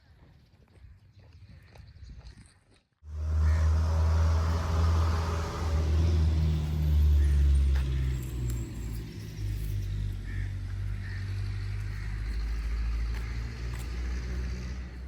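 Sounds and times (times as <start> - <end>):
engine running with deep drone: 3.1 - 15.0.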